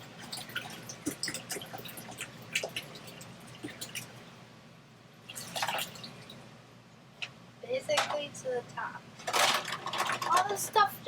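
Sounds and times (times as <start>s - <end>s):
water pouring into toilet bowl: 0.0s - 4.1s, 5.3s - 6.4s.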